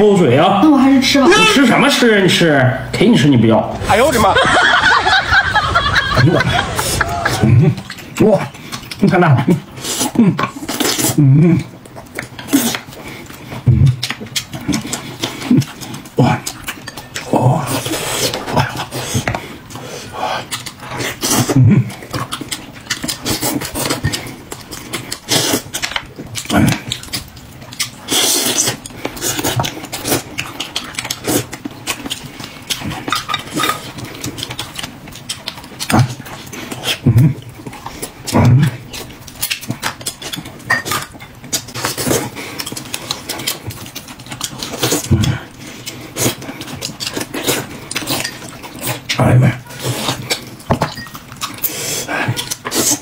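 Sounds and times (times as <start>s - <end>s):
wet chewing and smacking: 5.1s - 53.0s
low mouth sounds: 6.1s - 11.8s, 35.8s - 39.0s.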